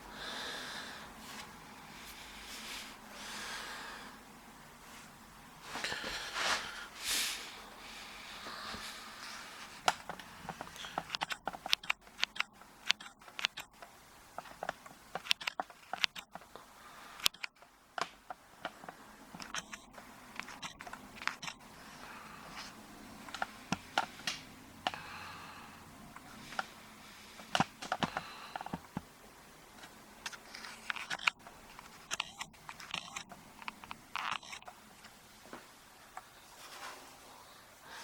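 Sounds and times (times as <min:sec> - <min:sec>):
plastic packaging clicking and crinkling: 0:09.2 - 0:16.6, 0:17.2 - 0:21.6, 0:27.4 - 0:29.1, 0:29.8 - 0:35.2.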